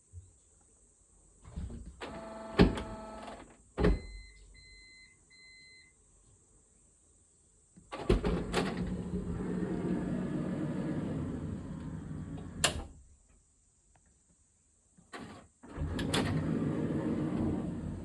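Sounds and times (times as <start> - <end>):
sliding door buzzing whine: 1.6 - 4.0, 7.9 - 13.0, 15.1 - 18.0
door motor running: 2.0 - 3.4.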